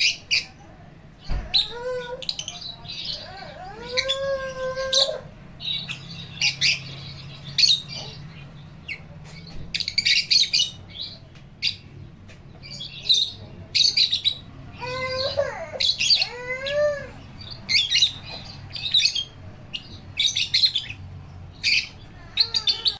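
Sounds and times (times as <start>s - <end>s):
birds chirping: 0.0s - 22.9s.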